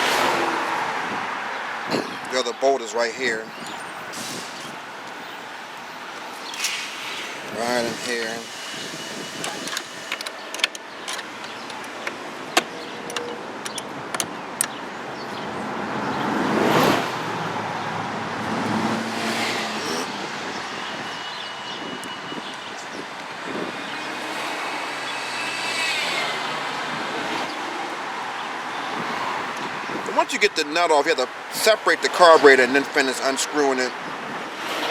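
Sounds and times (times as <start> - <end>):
car passing by: 0.0 - 1.5, 15.6 - 21.2, 23.5 - 29.8.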